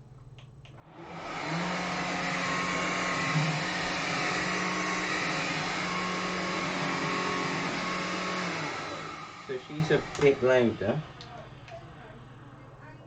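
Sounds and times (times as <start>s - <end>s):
vacuum motor whine: 0.8s - 13.0s.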